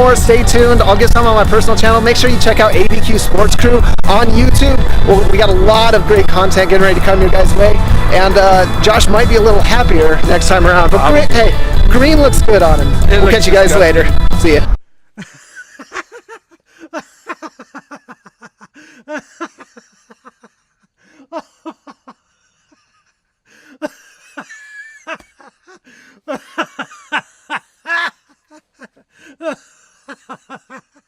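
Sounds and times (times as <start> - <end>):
person laughing: 15.2 - 31.0.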